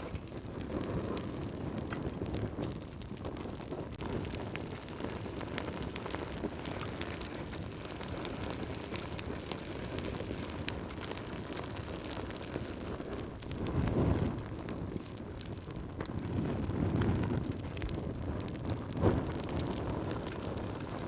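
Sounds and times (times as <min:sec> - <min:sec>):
fire crackling and popping: 0:00.0 - 0:21.0
low rumble of burning fire: 0:00.0 - 0:21.0.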